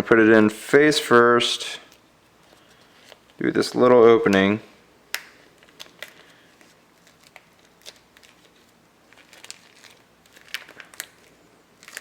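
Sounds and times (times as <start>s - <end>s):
plastic phone skin crinkling: 2.4s - 3.4s, 5.1s - 12.0s.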